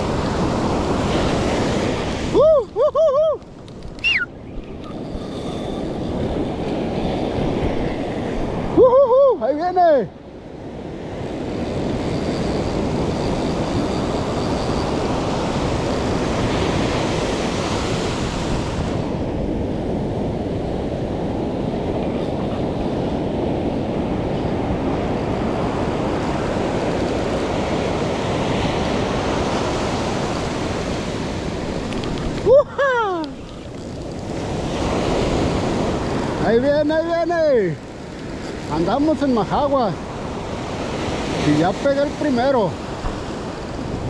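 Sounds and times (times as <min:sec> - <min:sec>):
ocean surf washing on beach: 0:00.0 - 0:44.0
wind rumbling on microphone: 0:00.0 - 0:44.0.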